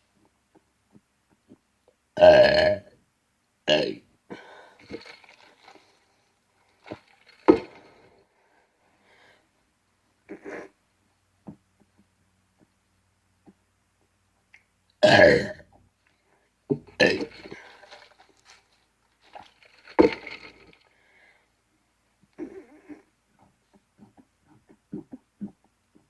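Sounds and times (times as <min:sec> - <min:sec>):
man burping: 0:02.2 - 0:02.9, 0:03.7 - 0:04.0, 0:15.0 - 0:15.7, 0:17.0 - 0:17.6.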